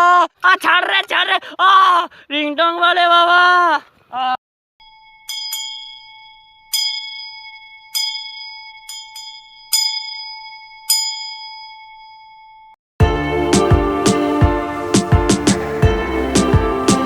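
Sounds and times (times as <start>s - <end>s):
bell ringing: 4.8s - 15.0s.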